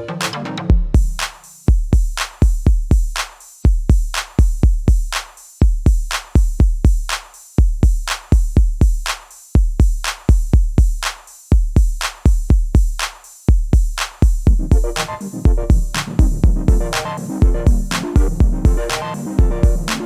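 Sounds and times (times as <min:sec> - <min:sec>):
drum machine beat: 0:00.0 - 0:20.0
synth melody: 0:14.5 - 0:20.0.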